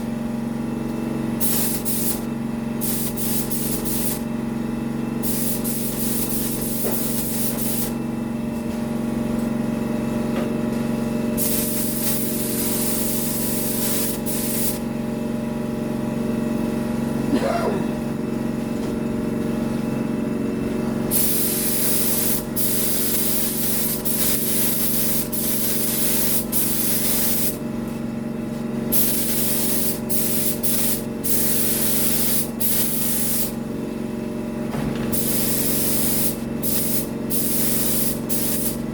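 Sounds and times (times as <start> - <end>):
steady mechanical hum: 0.0 - 38.9
paint spray gun hissing: 1.4 - 4.3, 5.2 - 8.0, 11.4 - 14.8, 21.1 - 27.6, 28.9 - 33.6, 35.1 - 38.8.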